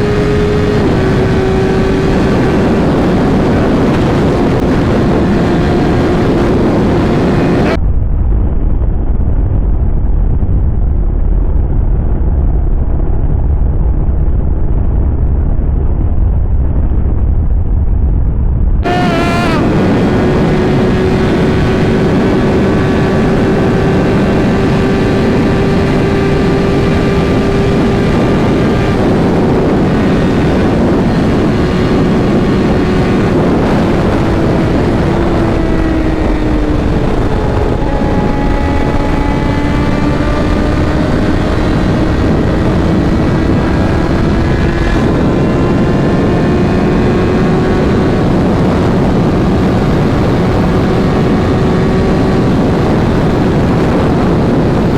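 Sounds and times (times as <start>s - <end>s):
motorcycle engine running: 0.0s - 7.8s, 18.8s - 54.9s
heavy wind rush: 0.0s - 54.9s.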